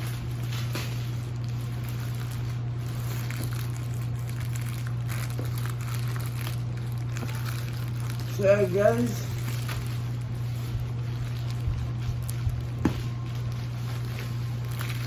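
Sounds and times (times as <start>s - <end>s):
packaging crackling: 0.0s - 15.0s
steady low hum: 0.0s - 15.0s.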